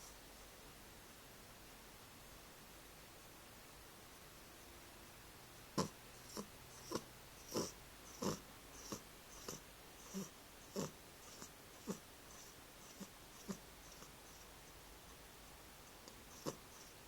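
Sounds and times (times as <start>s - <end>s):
cat snoring wheezily: 5.8s - 14.4s, 16.3s - 17.0s.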